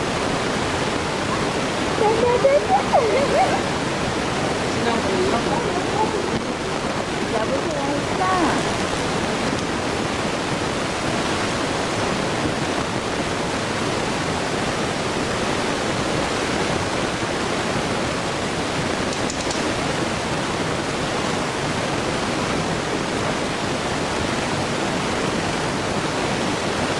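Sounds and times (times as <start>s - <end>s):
electric fan running: 14.3s - 20.6s.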